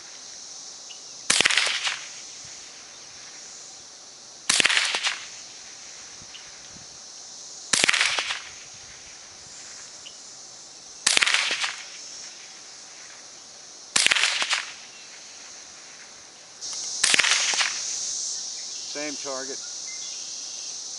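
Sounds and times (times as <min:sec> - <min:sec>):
high insect buzz: 0:00.0 - 0:20.9
rifle shots: 0:01.3 - 0:02.1, 0:04.5 - 0:05.3, 0:07.7 - 0:08.6, 0:11.0 - 0:12.0, 0:14.0 - 0:14.8, 0:17.0 - 0:17.8.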